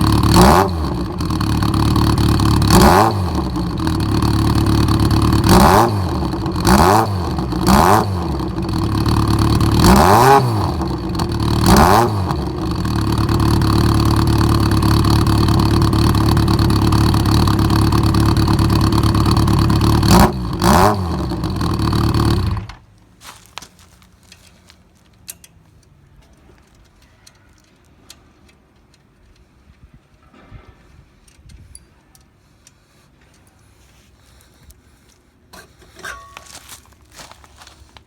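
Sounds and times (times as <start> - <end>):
motorcycle engine idling and revving: 0.0 - 22.9
faint light ticks: 25.2 - 29.9, 31.2 - 33.6.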